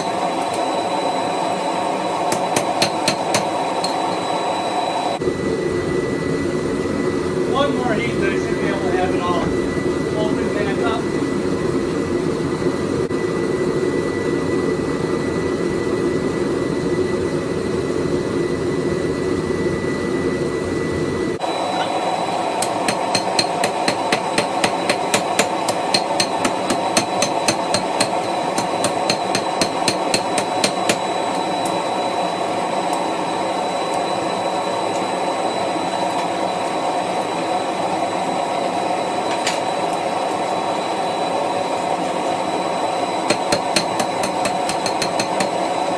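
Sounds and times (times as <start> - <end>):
hammer blows on hot steel: 2.3 - 4.2, 21.7 - 31.8, 43.2 - 45.8.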